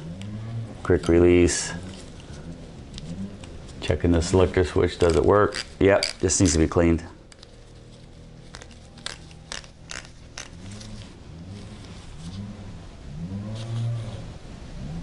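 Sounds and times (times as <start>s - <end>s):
metal hand tools clicking: 5.0s - 6.6s, 8.5s - 10.6s.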